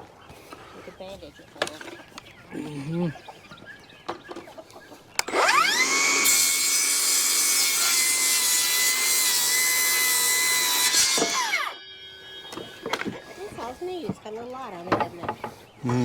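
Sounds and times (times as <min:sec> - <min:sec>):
power saw cutting wood: 0:05.2 - 0:14.1, 0:15.4 - 0:16.0.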